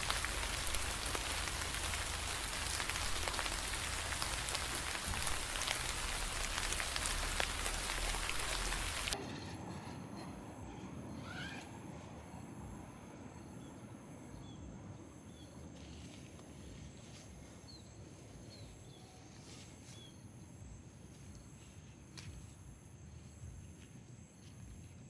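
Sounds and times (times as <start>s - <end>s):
low hiss: 0.0s - 9.2s
high insect drone: 0.0s - 9.6s.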